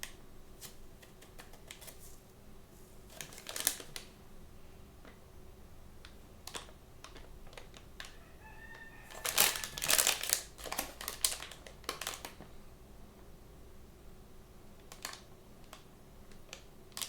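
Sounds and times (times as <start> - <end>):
plastic packaging crinkling: 3.1 - 4.1, 7.1 - 12.4.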